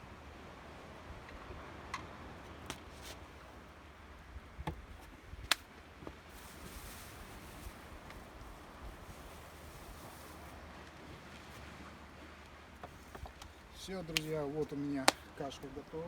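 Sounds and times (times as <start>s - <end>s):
low wind rumble: 3.3s - 16.0s.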